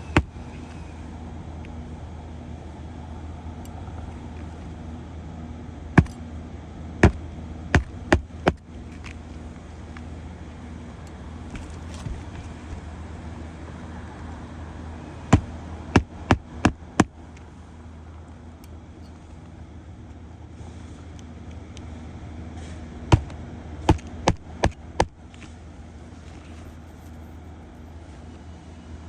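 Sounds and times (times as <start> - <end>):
hammer striking roofing nails: 7.0 - 7.2, 7.8 - 8.7, 15.3 - 17.1, 23.1 - 25.2.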